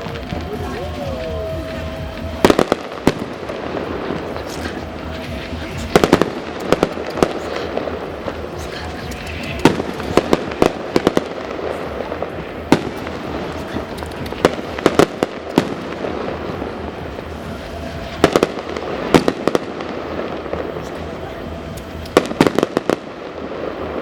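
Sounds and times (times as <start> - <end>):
background rumble: 0.0 - 24.0
fireworks bangs and cracks: 0.0 - 24.0.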